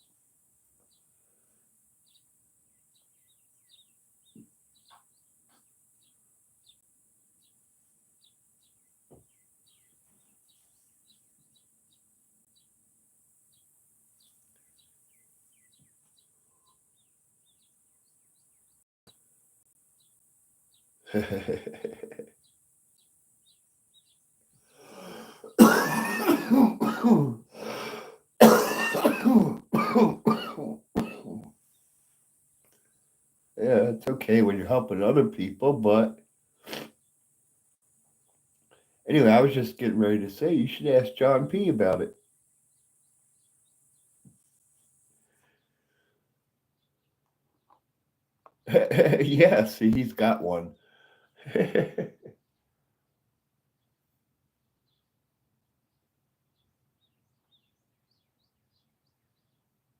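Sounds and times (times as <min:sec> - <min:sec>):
person coughing: 0:25.0 - 0:31.5, 0:48.7 - 0:49.2.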